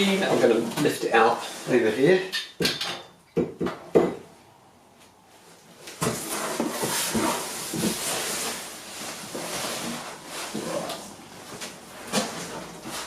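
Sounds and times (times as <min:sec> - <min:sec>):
packaging rustling and scraping: 0:05.4 - 0:13.0.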